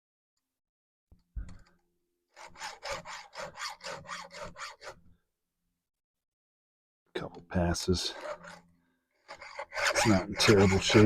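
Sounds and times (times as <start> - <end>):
file rasping on chainsaw chain: 2.4 - 5.0, 8.1 - 11.0.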